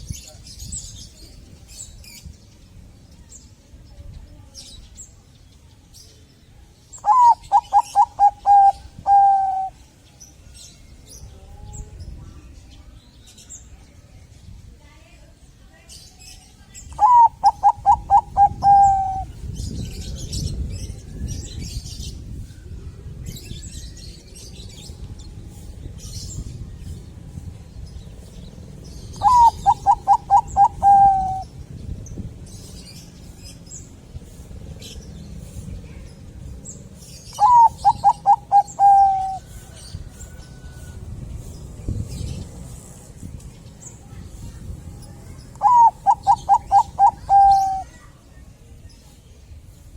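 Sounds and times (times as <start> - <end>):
small birds chirping: 0.0 - 49.9
dove cooing: 7.0 - 9.8, 17.0 - 19.3, 29.2 - 31.5, 37.4 - 39.6, 45.6 - 47.9.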